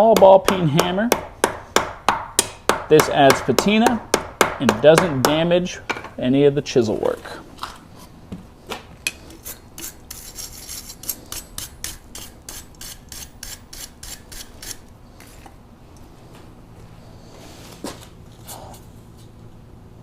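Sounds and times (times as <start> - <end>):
hammer tapping on hot steel: 0.1 - 6.1.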